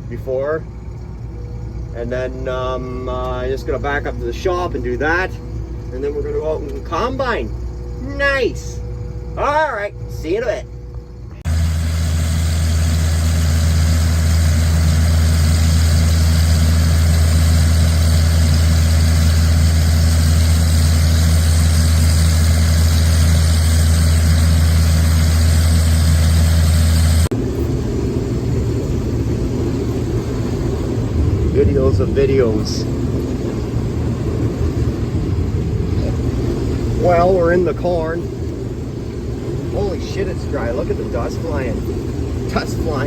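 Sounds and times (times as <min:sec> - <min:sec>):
diesel engine droning: 0:00.0 - 0:43.0.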